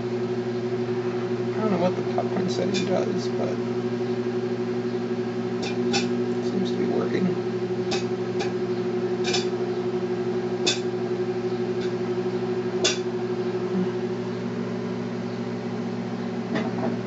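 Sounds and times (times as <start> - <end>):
microwave oven humming: 0.0 - 17.0
popcorn popping: 5.6 - 6.3, 7.8 - 8.6, 9.2 - 9.6, 10.6 - 13.2.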